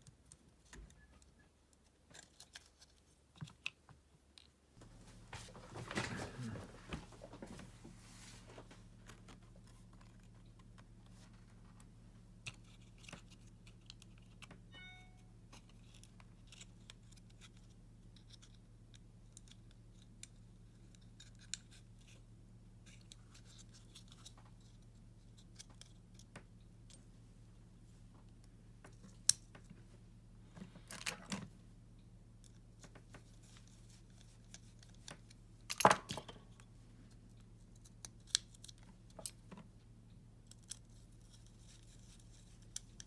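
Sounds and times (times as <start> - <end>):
small parts clicking and scratching: 0.0 - 4.6, 9.0 - 14.8, 15.5 - 27.1, 32.4 - 39.8, 40.4 - 43.0
low electrical hum: 0.0 - 43.0
faint short beep: 14.7 - 15.3.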